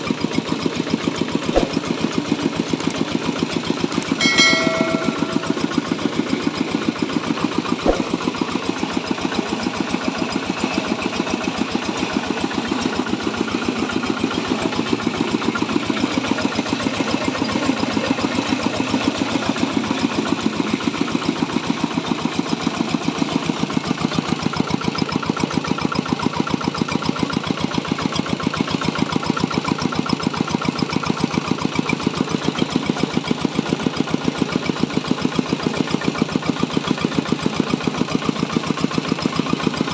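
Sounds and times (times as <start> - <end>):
sharp knock: 1.6 - 1.8, 4.2 - 5.8, 7.9 - 8.2.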